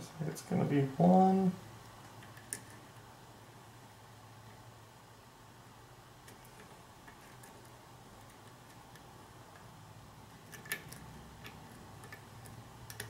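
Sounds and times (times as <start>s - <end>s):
lock opening clicks: 10.4s - 13.0s
lock pick clicks: 10.4s - 13.0s.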